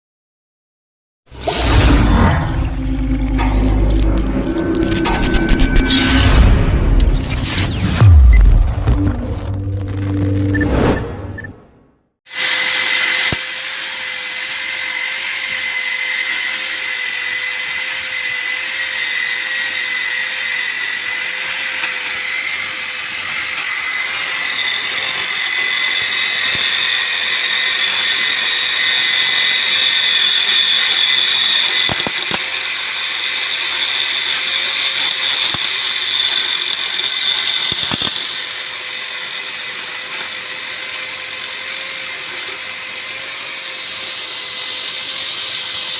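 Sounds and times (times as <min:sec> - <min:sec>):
lathe motor whirring: 0:12.4 - 0:45.9.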